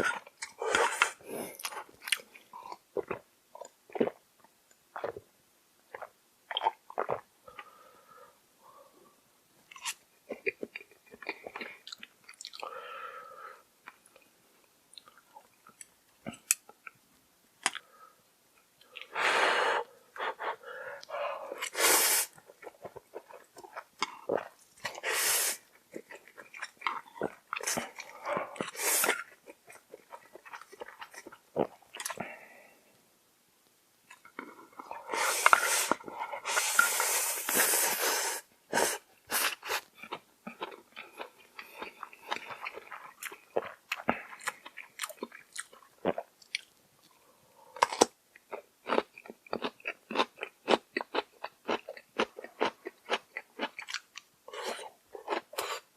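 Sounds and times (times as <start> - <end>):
chewing and mouth clicks: 9.7 - 12.7, 25.9 - 32.2, 39.7 - 47.2, 47.8 - 55.8
slurping noodles: 34.8 - 39.9.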